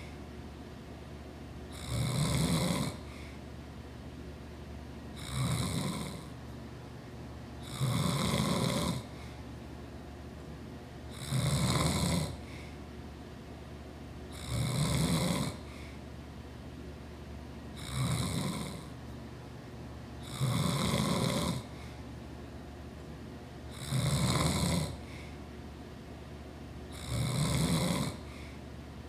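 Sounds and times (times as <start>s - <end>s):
steady low hum: 0.0s - 29.0s
man snoring loudly: 1.7s - 3.1s, 5.2s - 6.3s, 7.6s - 9.1s, 11.1s - 12.4s, 14.3s - 15.7s, 17.8s - 18.9s, 20.2s - 21.7s, 23.7s - 25.0s, 26.9s - 28.3s.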